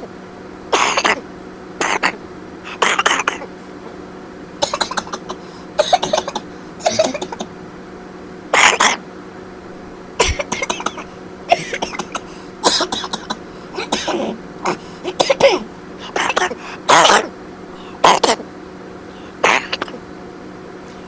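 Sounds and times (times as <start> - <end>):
man coughing: 0.8 - 1.2, 1.8 - 3.5, 4.6 - 7.5, 8.6 - 9.0, 10.2 - 17.3, 17.9 - 18.4, 19.4 - 20.0.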